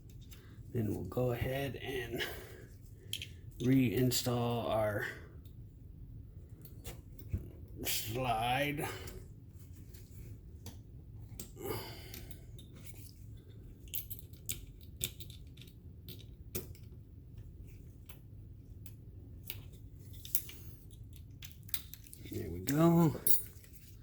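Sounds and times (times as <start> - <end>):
metal pistol parts clicking: 13.8 - 17.0, 18.8 - 23.6.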